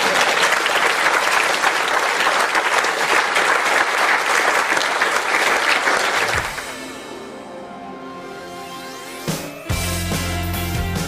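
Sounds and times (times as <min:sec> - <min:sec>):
audience applauding: 0:00.0 - 0:06.9.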